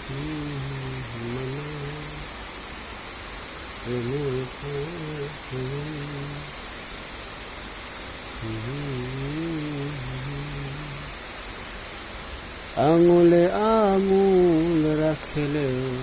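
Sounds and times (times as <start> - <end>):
man humming a melody: 0.0 - 2.3, 3.9 - 6.6, 8.4 - 11.2, 12.8 - 16.0
rain hiss: 0.0 - 16.0.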